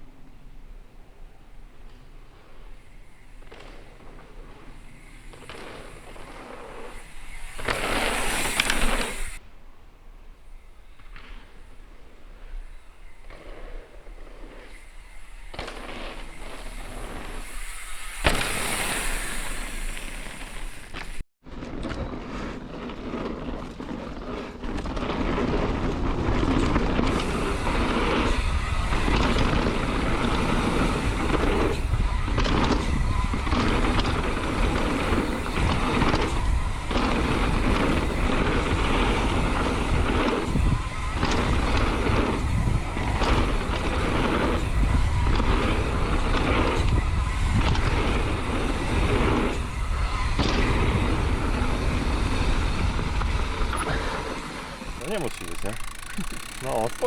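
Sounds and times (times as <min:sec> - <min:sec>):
rumble of bike tyres: 0:00.0 - 0:57.0
wind buffeting microphone: 0:00.8 - 0:57.0
rattling bike parts: 0:54.9 - 0:57.0.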